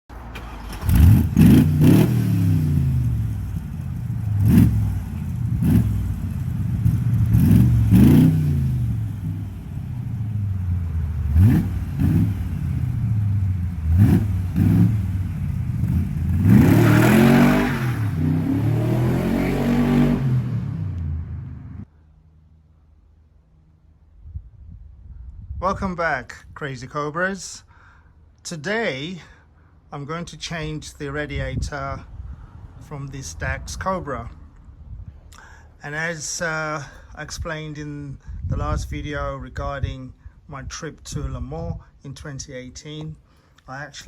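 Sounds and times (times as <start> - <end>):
car engine revving: 0.2 - 21.9.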